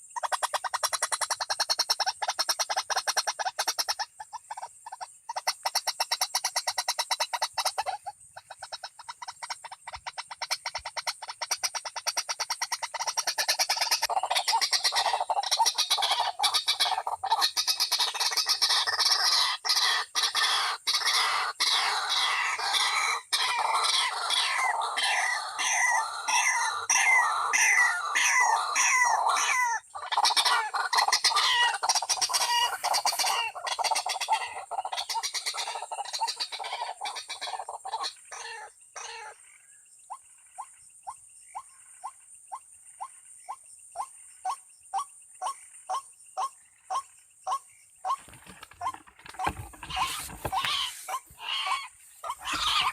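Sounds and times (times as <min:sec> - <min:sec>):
waterhen calling harsh notes: 0:12.7 - 0:39.4, 0:48.1 - 0:52.9.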